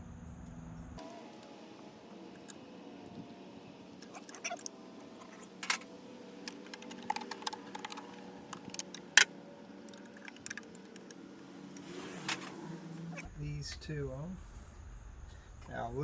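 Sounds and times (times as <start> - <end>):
hand tools clicking and tapping: 5.6 - 12.5.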